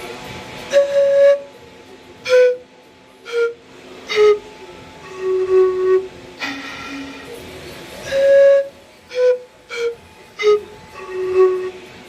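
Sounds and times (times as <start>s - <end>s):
breathy cane flute notes: 0.6s - 7.4s, 8.0s - 12.0s.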